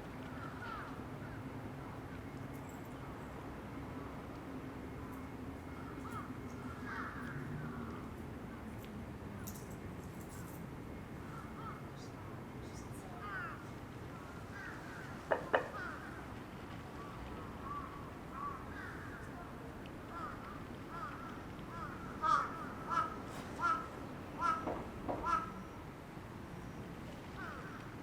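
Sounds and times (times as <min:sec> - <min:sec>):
birds calling: 0:00.3 - 0:01.4, 0:11.2 - 0:16.3, 0:16.9 - 0:19.5, 0:20.1 - 0:25.9, 0:26.6 - 0:28.0
crows cawing: 0:00.3 - 0:01.5, 0:05.7 - 0:08.1, 0:11.3 - 0:11.8, 0:13.2 - 0:16.3, 0:17.0 - 0:19.5, 0:20.1 - 0:25.8, 0:27.4 - 0:28.0.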